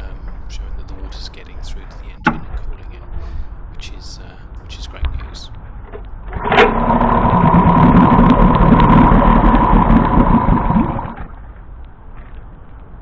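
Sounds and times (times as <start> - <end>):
outboard motor running: 5.9 - 11.5.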